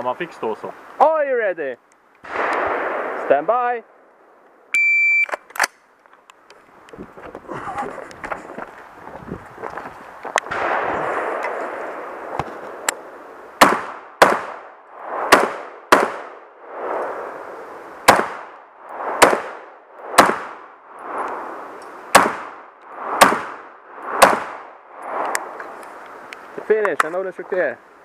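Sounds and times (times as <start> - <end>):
rifle shots with echo: 2.3 - 3.4, 10.5 - 11.9, 13.6 - 16.5, 18.0 - 20.8, 22.1 - 24.8.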